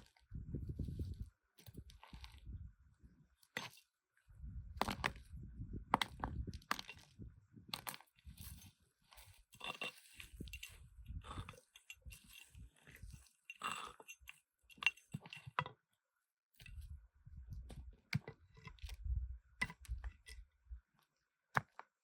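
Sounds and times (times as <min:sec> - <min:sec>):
small hard objects clinking: 0:07.8 - 0:15.6.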